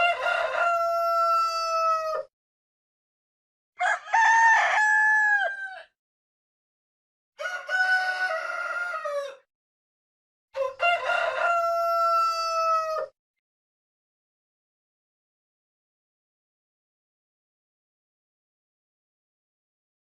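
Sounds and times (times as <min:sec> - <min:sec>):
rooster crowing: 0:00.0 - 0:02.3, 0:03.8 - 0:06.0, 0:07.4 - 0:09.5, 0:10.6 - 0:13.2.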